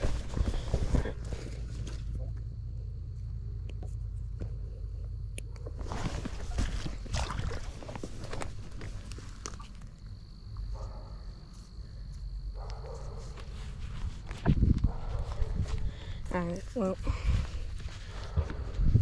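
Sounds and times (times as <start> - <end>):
handling knocks and rustles: 0.0 - 2.4, 5.6 - 10.0
footsteps: 10.8 - 19.0
low microphone rumble: 13.5 - 19.0.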